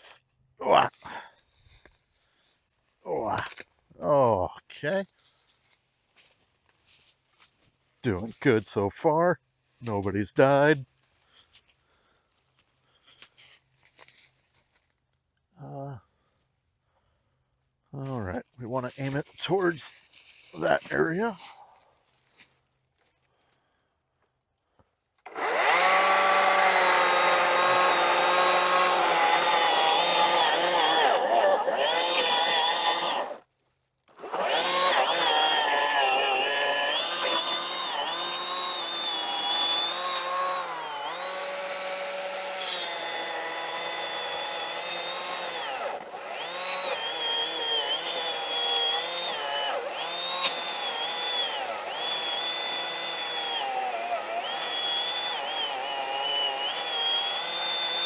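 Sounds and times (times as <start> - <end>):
chainsaw cutting wood: 18.7 - 21.6, 25.2 - 33.5, 34.1 - 58.0.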